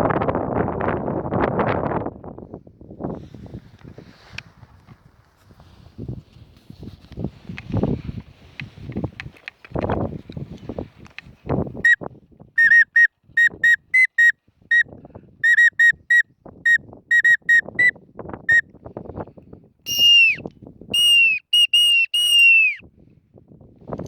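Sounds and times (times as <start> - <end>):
wind noise: 0.0 - 24.0
whistle peeps: 12.6 - 17.9, 19.9 - 22.8.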